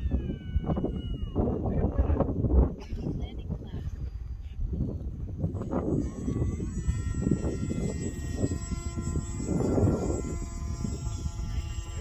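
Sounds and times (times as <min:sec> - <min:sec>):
wind buffeting microphone: 0:00.0 - 0:12.0
model aircraft motor whine: 0:05.3 - 0:12.0.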